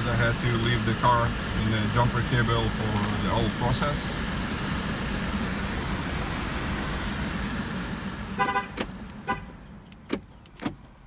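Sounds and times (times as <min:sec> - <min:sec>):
car engine idling: 0:00.0 - 0:10.5
car horn chirp: 0:08.4 - 0:09.5.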